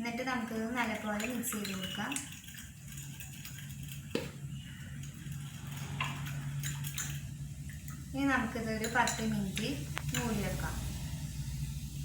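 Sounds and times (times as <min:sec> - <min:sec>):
steady low hum: 0:00.0 - 0:12.0
spoon stirring in a bowl: 0:00.3 - 0:11.0
spoon clinking against bowl: 0:00.8 - 0:04.0, 0:06.0 - 0:07.3, 0:08.6 - 0:10.5.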